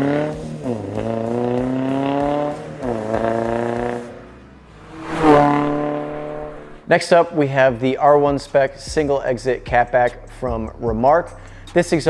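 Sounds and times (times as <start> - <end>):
car engine accelerating: 0.0 - 6.9.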